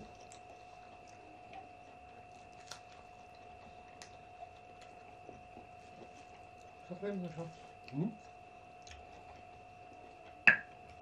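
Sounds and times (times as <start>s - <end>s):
chewing mouth noises: 0.0s - 6.8s
faint electrical whine: 0.0s - 11.0s.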